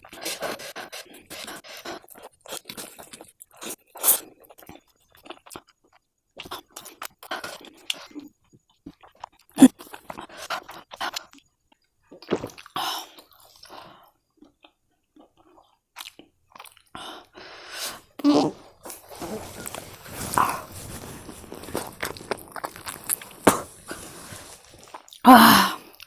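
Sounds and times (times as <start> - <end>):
chewing noodles: 0.0 - 26.0.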